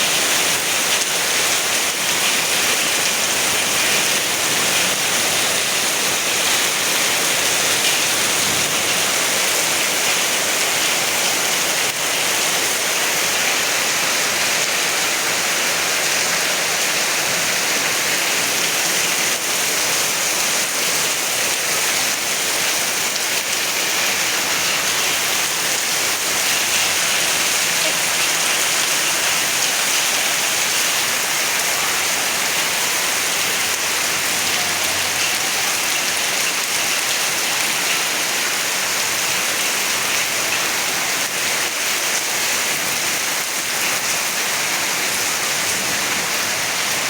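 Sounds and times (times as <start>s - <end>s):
heavy rain pouring: 0.0s - 47.0s.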